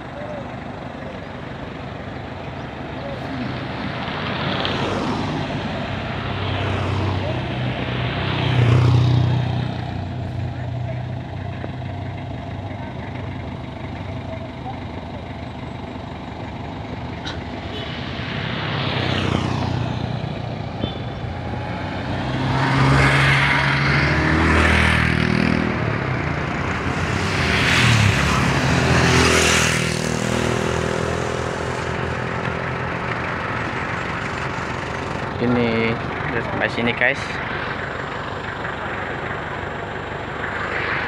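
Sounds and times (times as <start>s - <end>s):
pickup engine revving: 16.4s - 41.0s.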